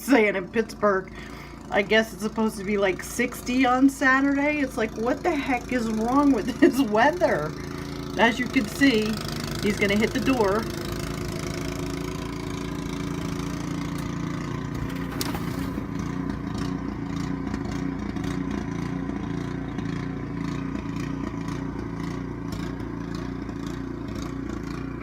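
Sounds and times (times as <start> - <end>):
snowblower engine running: 0.1 - 25.0
snow hitting a door: 14.6 - 16.7.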